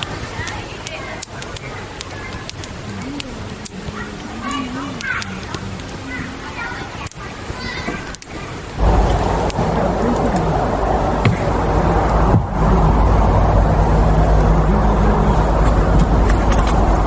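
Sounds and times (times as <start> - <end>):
vehicle engine running: 8.8 - 17.0.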